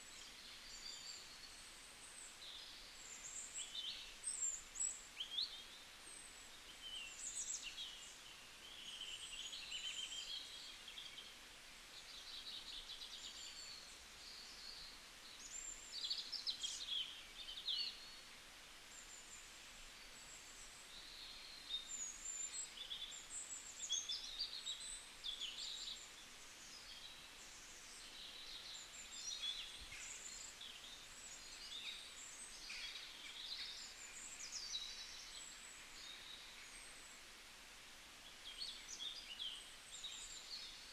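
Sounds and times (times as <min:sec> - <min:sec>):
faint background hiss: 0:00.0 - 0:40.9.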